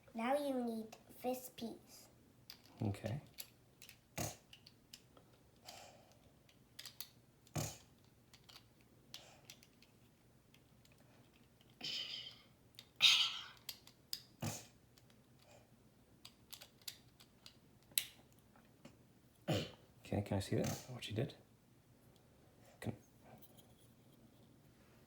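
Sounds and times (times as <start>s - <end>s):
plastic bricks clicking: 2.5s - 5.1s, 6.5s - 7.2s, 8.0s - 9.9s, 13.6s - 14.3s, 16.2s - 18.2s.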